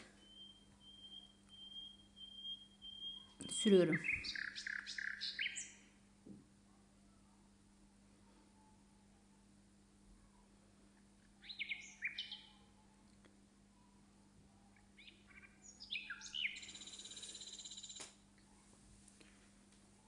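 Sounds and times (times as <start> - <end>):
small bird chirping: 0.0 - 5.9, 11.3 - 12.9, 14.8 - 18.1
faint steady hum: 0.0 - 20.0.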